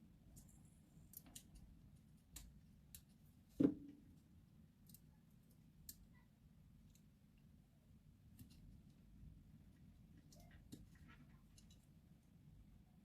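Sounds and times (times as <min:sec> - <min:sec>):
light clicks of small tools: 0:00.3 - 0:03.2, 0:10.2 - 0:12.0.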